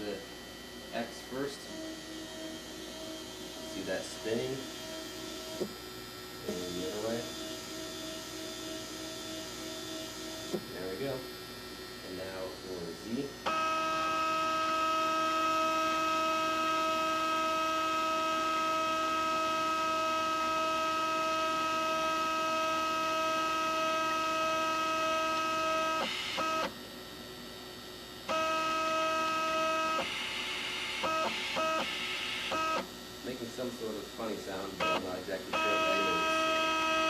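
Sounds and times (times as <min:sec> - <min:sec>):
stepper motor whining: 0:01.0 - 0:05.8, 0:12.2 - 0:26.7, 0:28.3 - 0:37.0.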